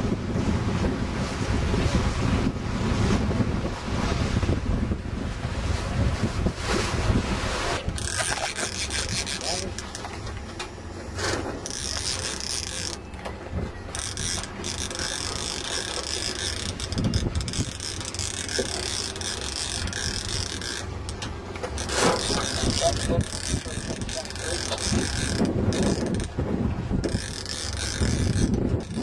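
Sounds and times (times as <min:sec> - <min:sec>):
sea noise: 0:00.0 - 0:29.0
wind: 0:00.0 - 0:29.0
fishing reel ratcheting: 0:07.9 - 0:10.2, 0:11.6 - 0:13.1, 0:13.9 - 0:26.4, 0:27.0 - 0:29.0.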